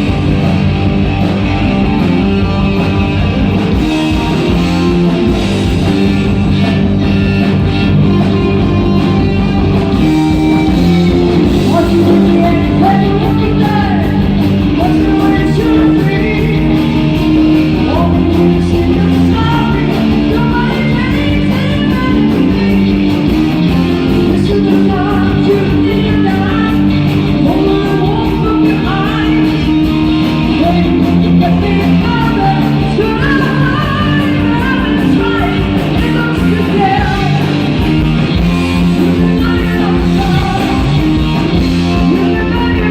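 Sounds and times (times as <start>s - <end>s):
electric guitar: 0.0s - 42.9s
steady low bass notes: 0.0s - 42.9s
person singing: 9.9s - 37.8s, 38.8s - 42.9s.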